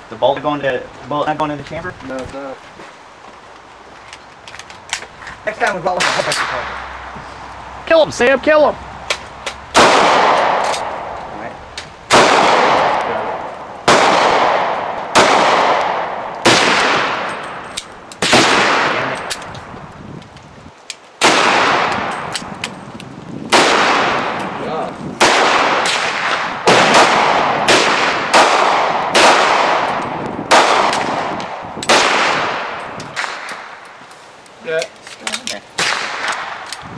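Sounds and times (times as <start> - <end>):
gunshots with echo: 9.7 - 11.2, 12.1 - 17.6, 18.2 - 19.4, 21.2 - 22.5, 23.5 - 33.7.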